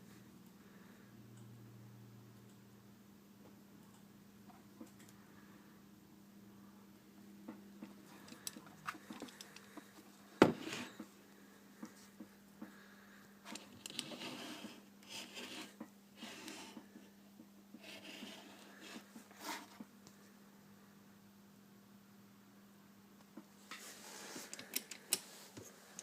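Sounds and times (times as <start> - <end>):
small parts rubbing and scraping: 13.4 - 16.8.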